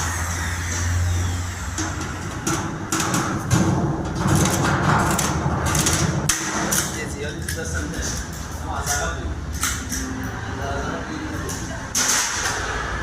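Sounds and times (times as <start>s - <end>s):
exhaust fan humming: 0.0s - 13.0s
knocking and rattling: 1.8s - 7.0s.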